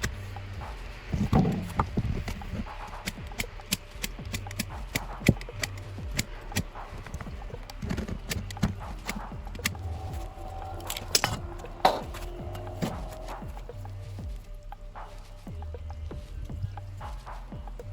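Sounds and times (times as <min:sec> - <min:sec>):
steady low hum: 0:00.0 - 0:17.9.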